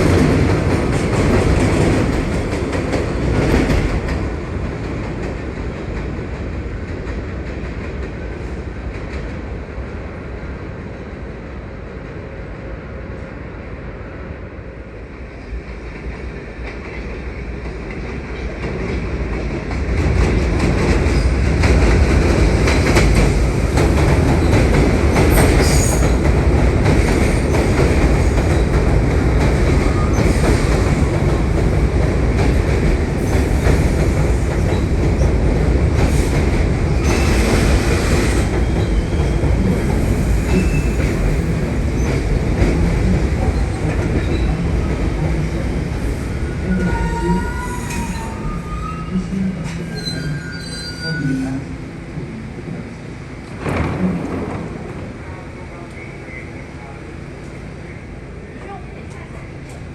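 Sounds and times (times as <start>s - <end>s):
subway train rumbling: 0.0s - 59.9s
train wheel squeals: 24.4s - 26.2s, 37.0s - 42.2s, 43.5s - 44.6s, 46.0s - 51.8s.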